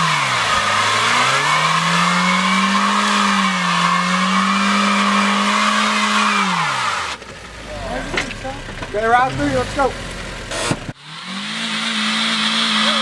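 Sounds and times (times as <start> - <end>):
car engine revving high: 0.0 - 13.0
tyres squealing: 0.4 - 10.7.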